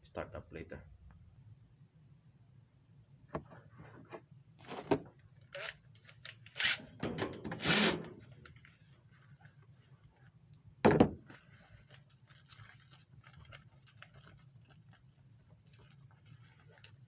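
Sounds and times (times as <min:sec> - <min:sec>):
loud thump: 0:10.8 - 0:11.2
handling clicks and rustles: 0:11.2 - 0:17.0.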